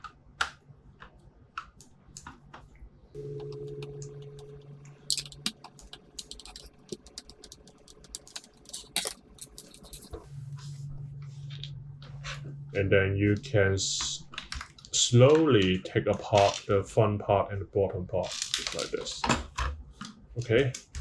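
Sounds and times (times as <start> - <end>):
steady low hum: 3.2 - 16.1
plastic parts knocking: 5.1 - 10.2
screwdriver clicking on screws: 5.1 - 10.2.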